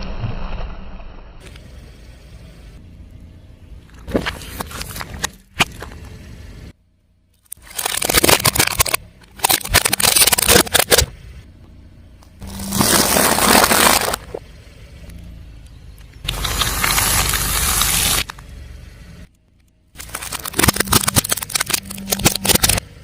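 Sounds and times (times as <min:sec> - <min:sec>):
tyre crushing crunchy objects: 0:07.4 - 0:11.1, 0:12.4 - 0:14.4, 0:16.2 - 0:18.3, 0:20.0 - 0:22.9.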